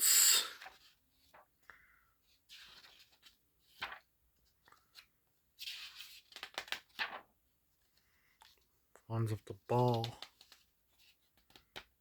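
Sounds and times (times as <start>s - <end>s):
paper pages rustling and crackling: 2.4s - 8.6s, 9.7s - 12.0s.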